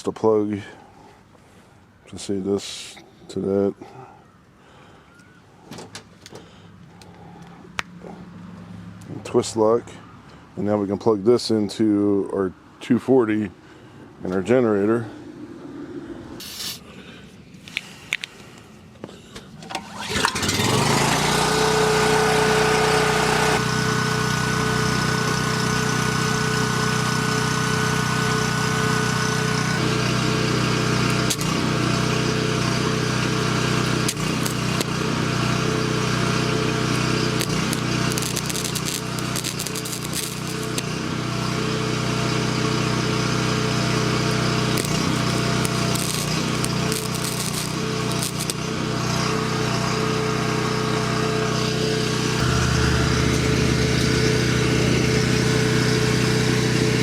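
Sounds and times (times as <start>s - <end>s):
generator engine running: 19.6s - 57.0s.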